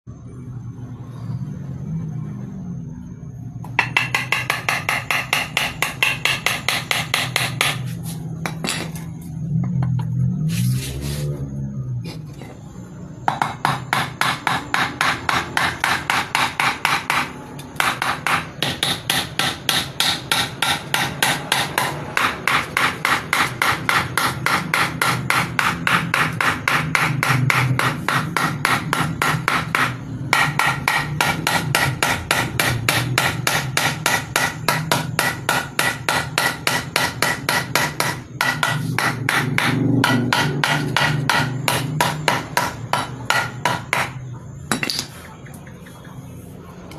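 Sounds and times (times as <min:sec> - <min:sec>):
hammer striking wood: 0:03.7 - 0:09.0, 0:13.3 - 0:45.1.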